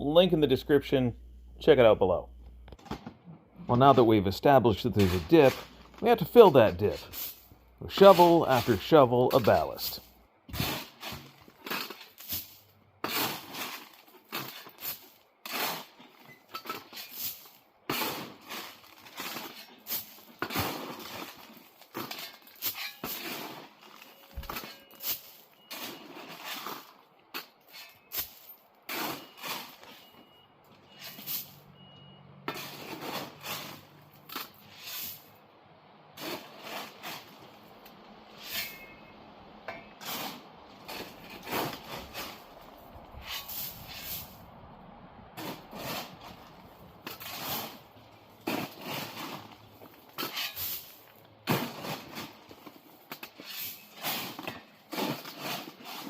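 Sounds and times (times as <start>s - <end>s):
shovel scraping into gravel: 4.9s - 30.1s, 30.9s - 31.6s, 32.5s - 35.3s, 36.2s - 37.5s, 38.3s - 39.0s, 40.0s - 42.5s, 43.2s - 44.4s, 45.4s - 47.8s, 48.4s - 56.0s.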